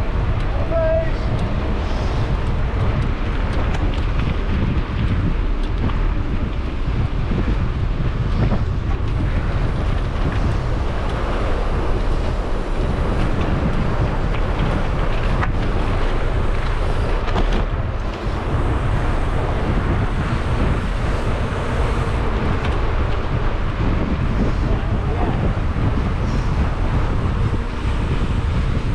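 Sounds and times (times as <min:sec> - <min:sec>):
faint clicks and rattles: 0:00.0 - 0:28.9
wind buffeting microphone: 0:00.0 - 0:28.9.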